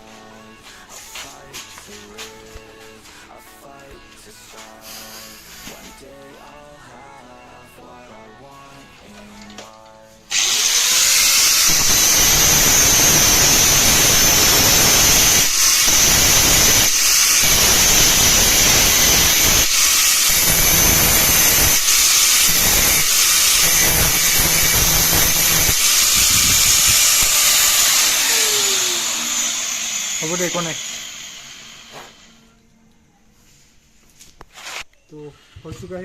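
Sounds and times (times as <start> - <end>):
electric grinder grinding metal: 10.3 - 32.4.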